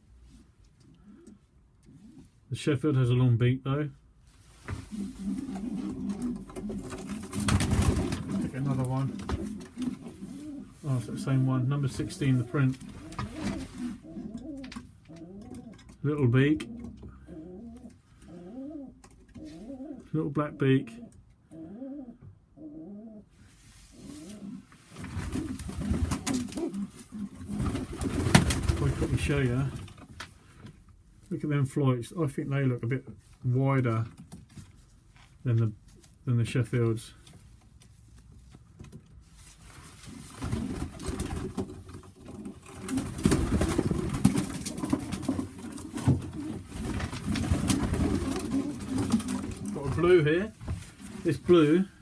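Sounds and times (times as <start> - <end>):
rustling: 4.2 - 16.0, 23.4 - 31.4, 37.1 - 52.0
pigeons cooing: 4.8 - 11.1, 12.0 - 15.9, 16.6 - 20.1, 20.8 - 23.3, 23.9 - 24.7, 25.3 - 29.1, 42.2 - 50.1.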